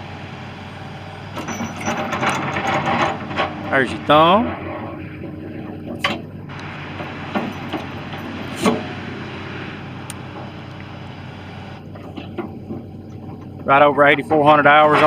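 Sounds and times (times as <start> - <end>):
diesel engine running: 0.0 - 15.0
rushing noise: 6.4 - 11.9.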